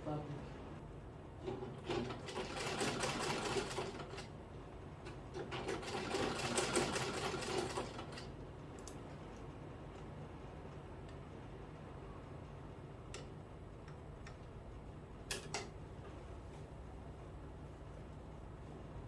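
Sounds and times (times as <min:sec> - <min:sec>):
sewing machine stitching: 0:01.5 - 0:04.3, 0:05.4 - 0:08.2.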